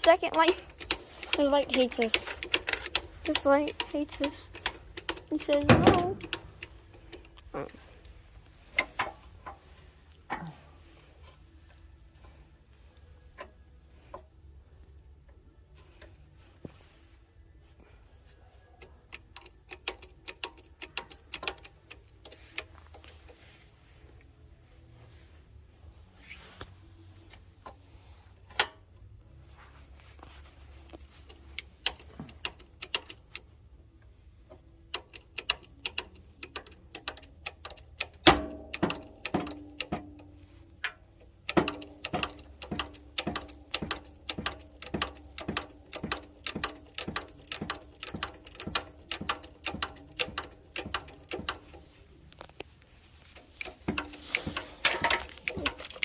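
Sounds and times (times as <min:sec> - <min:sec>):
sharp metal clicks ringing: 0:34.9 - 0:40.3, 0:41.4 - 0:51.8.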